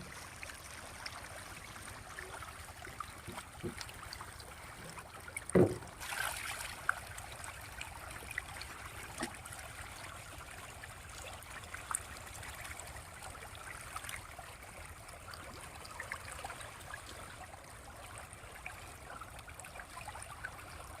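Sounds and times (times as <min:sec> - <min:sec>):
small splashes at water surface: 0:00.0 - 0:10.2
faint water noise: 0:00.0 - 0:21.0.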